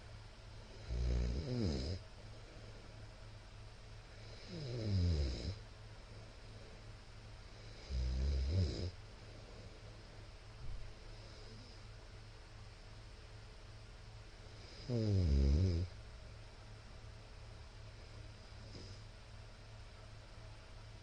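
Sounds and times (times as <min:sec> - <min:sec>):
steady low hum: 0:00.0 - 0:21.0
man snoring loudly: 0:00.8 - 0:02.0, 0:04.2 - 0:05.6, 0:07.7 - 0:08.9, 0:14.7 - 0:15.9.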